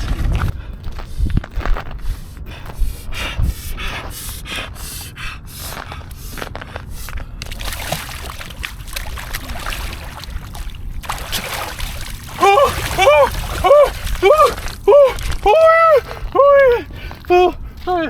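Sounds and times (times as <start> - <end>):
person gasping for breath: 2.0 - 8.1, 12.3 - 15.4, 16.0 - 17.9.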